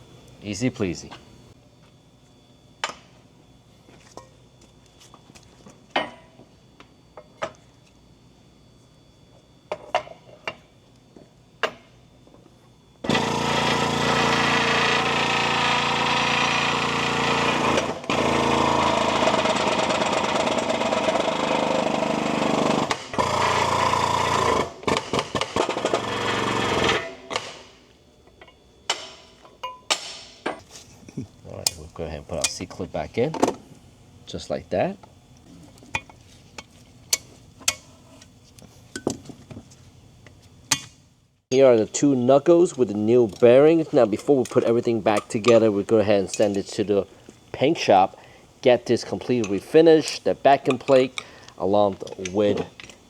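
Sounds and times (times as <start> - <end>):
power tool running: 13.0 - 27.1.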